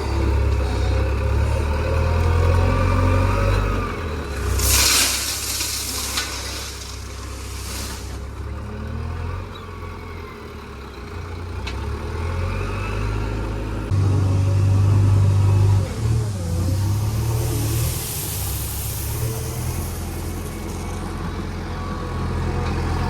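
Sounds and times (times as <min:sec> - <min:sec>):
diesel engine running under load: 0:00.0 - 0:23.0
hissing: 0:04.4 - 0:08.4, 0:16.5 - 0:21.0.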